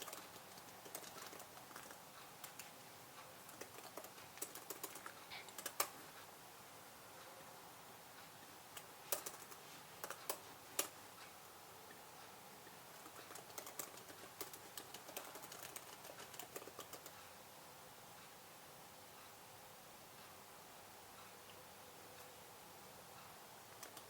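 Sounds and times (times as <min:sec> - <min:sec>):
computer keyboard typing: 0:00.0 - 0:02.8, 0:03.4 - 0:06.0, 0:08.8 - 0:11.0, 0:12.9 - 0:17.2, 0:23.7 - 0:24.0.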